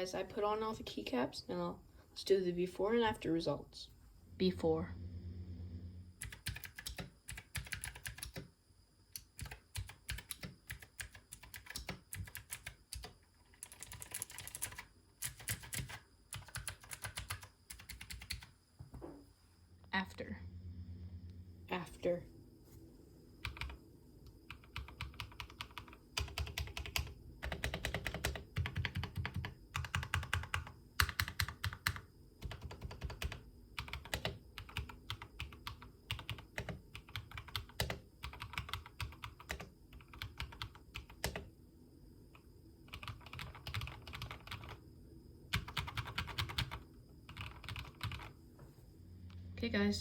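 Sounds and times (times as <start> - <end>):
mechanical keyboard typing: 6.2 - 8.5, 9.1 - 18.5, 23.4 - 23.8, 24.5 - 41.5, 42.9 - 44.8, 45.5 - 48.3.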